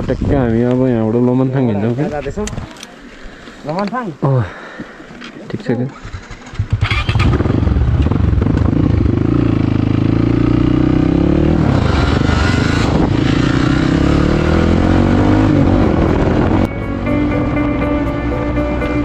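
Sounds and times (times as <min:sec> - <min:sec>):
motorcycle engine running: 0:05.9 - 0:18.9.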